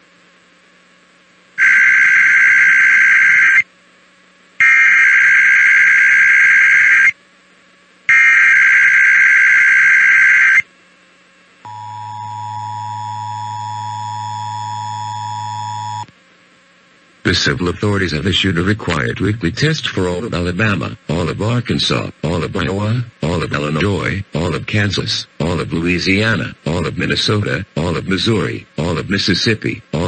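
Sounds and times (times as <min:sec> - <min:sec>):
warbling data tone bursts: 0:01.6 - 0:03.7, 0:04.6 - 0:07.2, 0:08.1 - 0:10.6, 0:11.7 - 0:16.1
two-tone attention signal: 0:11.7 - 0:16.1.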